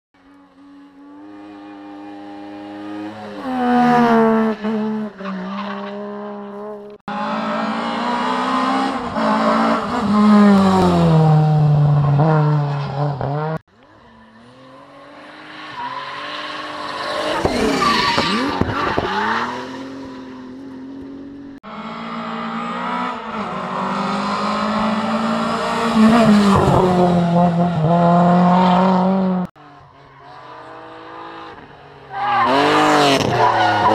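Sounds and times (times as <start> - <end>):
rally car engines revving: 0.4 - 33.9.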